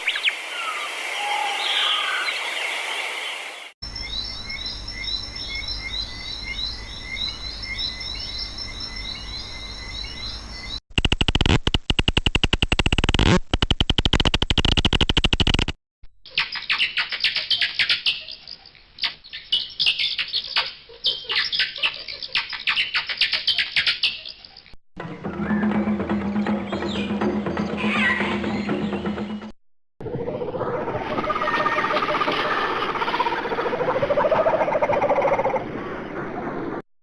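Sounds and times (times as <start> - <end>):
birds chirping: 16.3 - 29.5.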